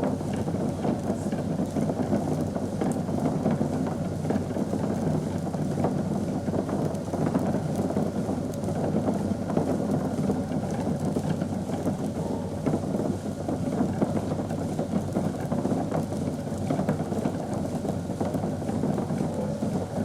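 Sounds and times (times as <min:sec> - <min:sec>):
liquid bubbling in a pot: 0:00.0 - 0:20.0.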